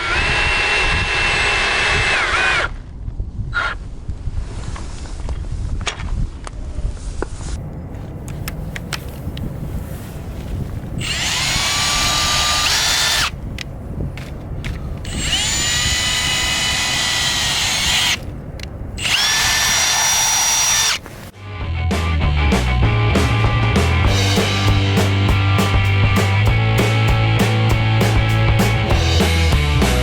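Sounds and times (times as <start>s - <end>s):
power drill whine: 0.0s - 2.8s, 11.0s - 13.3s, 15.0s - 18.2s, 19.0s - 21.0s
music: 21.4s - 30.0s.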